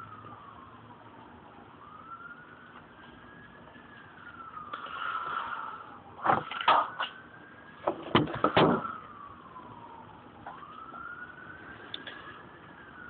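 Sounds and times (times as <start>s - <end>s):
siren wailing: 0.0s - 13.0s
loud clattering knocks: 7.9s - 8.9s.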